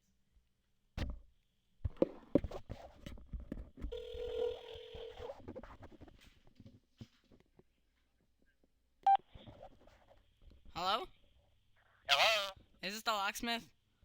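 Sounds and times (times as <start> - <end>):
telephone ringing tone: 3.9 - 5.2.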